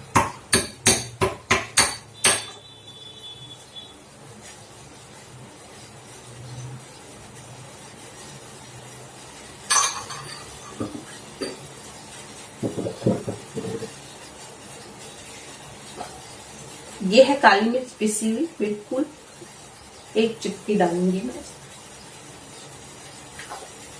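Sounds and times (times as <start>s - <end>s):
sharp utensil clink: 9.7s - 10.8s
soft knocks and taps: 12.6s - 13.9s.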